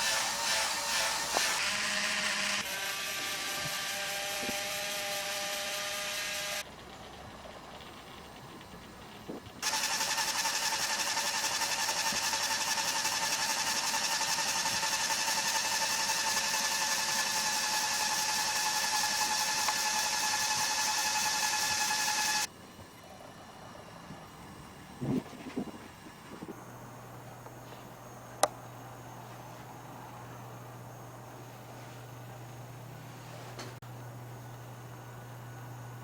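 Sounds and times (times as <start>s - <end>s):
small electric motor whining: 0.0s - 22.5s.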